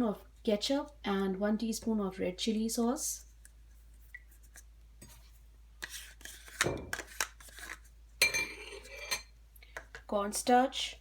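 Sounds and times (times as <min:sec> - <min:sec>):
spoon clinking against bowl: 0:08.2 - 0:09.3.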